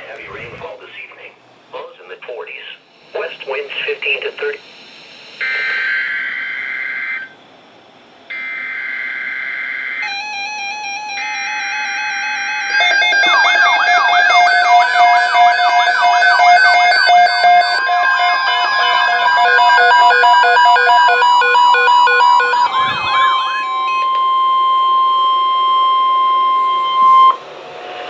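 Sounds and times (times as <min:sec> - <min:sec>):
fast electronic wailing siren: 0:08.3 - 0:27.4
steady warning alarm tone: 0:08.3 - 0:27.4
stepped electronic tones: 0:10.0 - 0:27.4.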